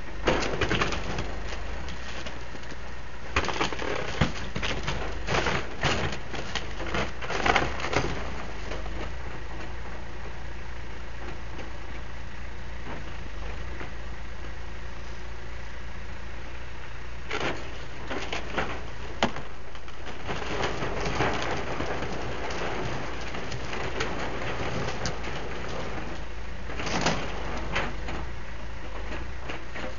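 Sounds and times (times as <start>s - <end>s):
backhoe engine running: 0.0s - 29.9s
material crackling and breaking: 0.2s - 9.2s, 17.3s - 28.2s.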